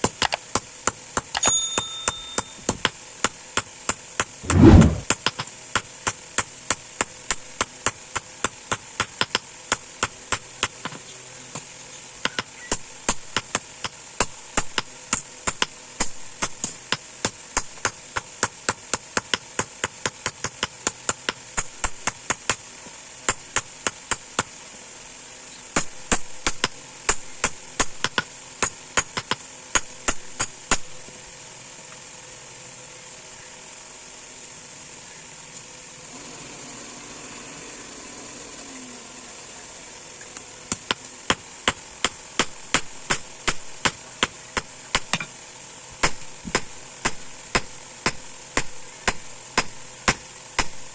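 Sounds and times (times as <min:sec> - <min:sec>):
hammer ringing on steel: 0:01.4 - 0:02.7
heavy low thud: 0:04.4 - 0:05.0.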